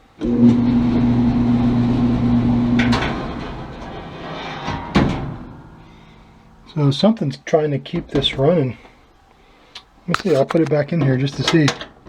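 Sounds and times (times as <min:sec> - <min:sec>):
electric dryer humming: 0:00.2 - 0:03.6
dryer drum spinning down: 0:00.2 - 0:06.8.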